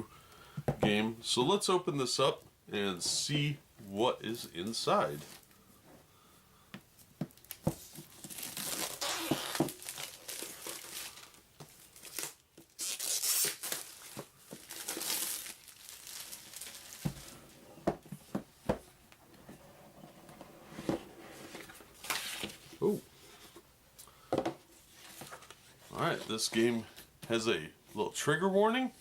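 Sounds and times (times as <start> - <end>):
wrapping tearing and crinkling: 7.3 - 17.5.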